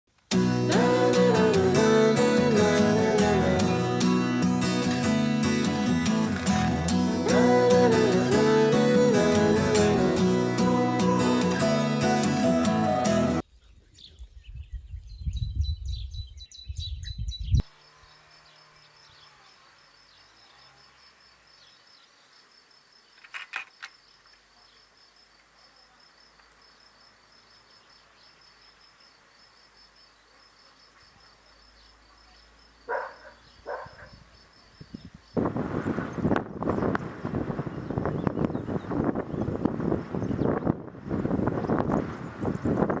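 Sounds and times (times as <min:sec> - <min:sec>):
bird chirps: 0:13.5 - 0:20.8
crickets chirping: 0:17.7 - 0:39.2.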